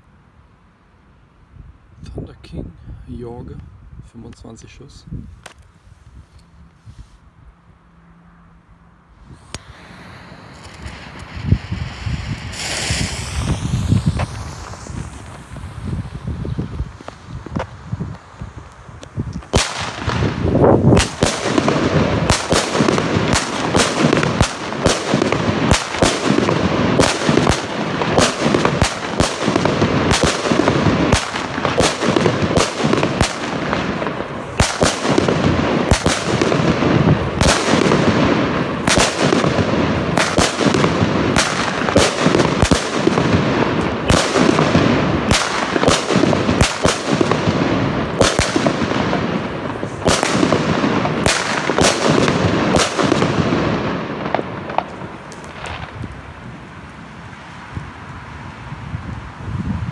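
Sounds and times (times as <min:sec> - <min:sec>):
firework hiss and crackle: 0:04.1 - 0:07.4, 0:09.1 - 0:59.9
firework salute bangs: 0:09.2 - 0:56.2.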